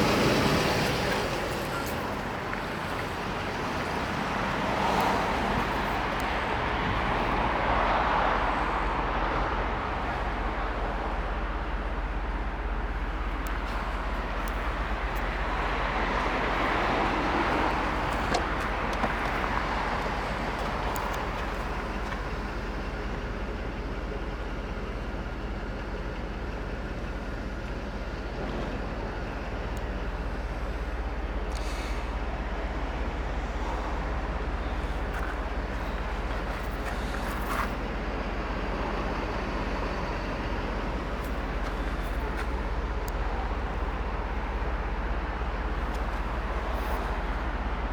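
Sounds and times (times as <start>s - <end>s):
car engine running: 9.6s - 23.2s, 29.5s - 47.9s.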